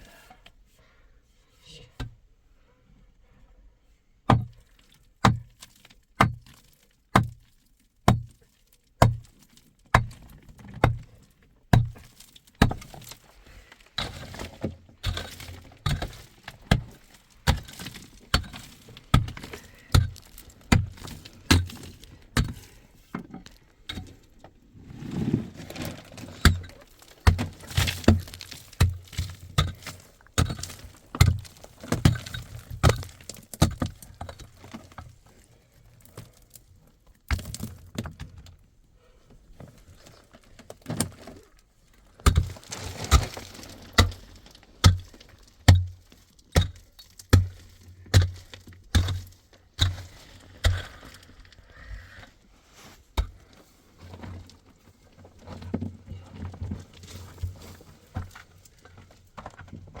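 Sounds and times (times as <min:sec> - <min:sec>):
hand tool striking rock: 0:04.3 - 0:04.6, 0:05.2 - 0:07.4, 0:08.1 - 0:08.4, 0:09.0 - 0:11.1, 0:11.7 - 0:13.2, 0:14.0 - 0:24.2, 0:26.3 - 0:35.1, 0:37.3 - 0:38.2, 0:42.2 - 0:51.6, 0:53.2 - 0:53.4.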